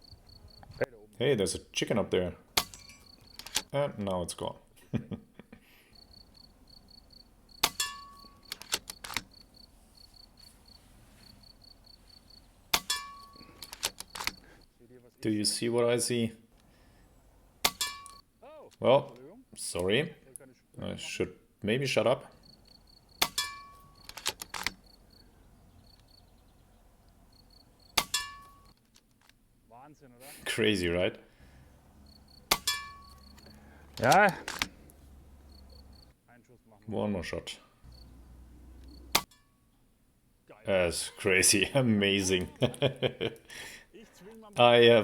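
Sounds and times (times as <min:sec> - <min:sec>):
insect chirping: 0:00.0 - 0:00.8, 0:02.8 - 0:03.5, 0:05.8 - 0:14.7, 0:22.3 - 0:28.8, 0:31.4 - 0:36.2, 0:37.7 - 0:39.8
rifle action clicks: 0:02.6 - 0:03.7, 0:07.6 - 0:09.3, 0:12.7 - 0:14.5, 0:22.6 - 0:24.8, 0:32.5 - 0:34.8.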